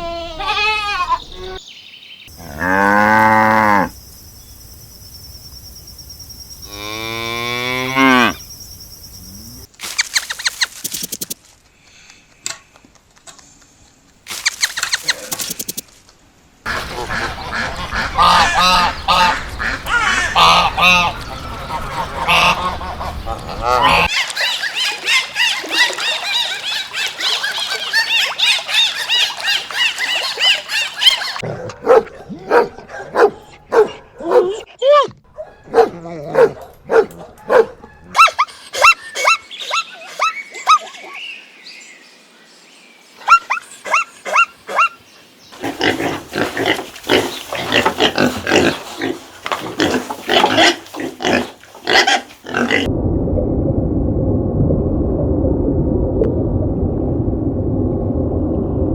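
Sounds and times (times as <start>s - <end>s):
geese honking: 16.7s - 31.4s
many birds chattering: 16.7s - 31.4s.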